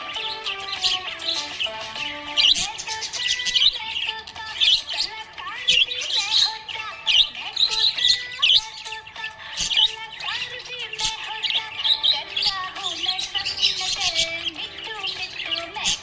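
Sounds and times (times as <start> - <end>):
budgerigars chirping and warbling: 0.0 - 16.0.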